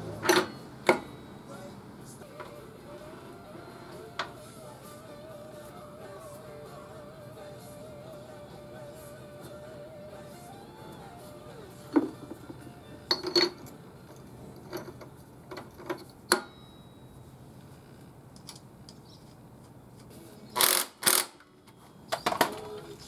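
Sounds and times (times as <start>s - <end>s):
metal tools clinking and knocking: 11.9s - 16.7s.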